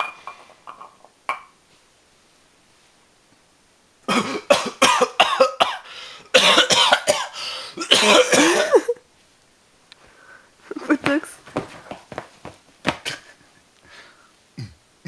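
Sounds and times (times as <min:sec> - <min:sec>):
man coughing and hacking: 0:04.1 - 0:09.0.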